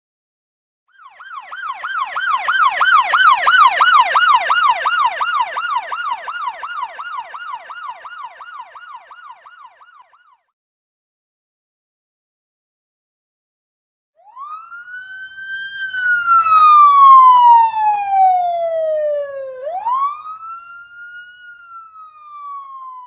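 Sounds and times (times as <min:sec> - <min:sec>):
police siren yelping: 0:00.9 - 0:10.5, 0:14.2 - 0:23.0.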